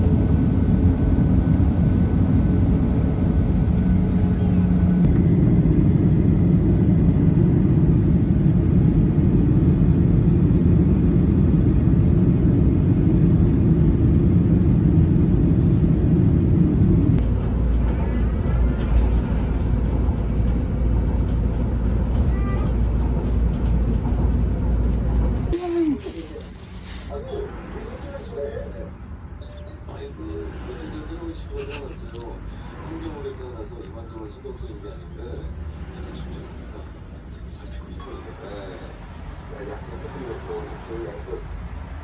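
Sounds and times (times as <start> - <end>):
steady low hum: 0.0 - 27.1
airliner cabin rumble: 0.0 - 28.7, 29.5 - 42.0.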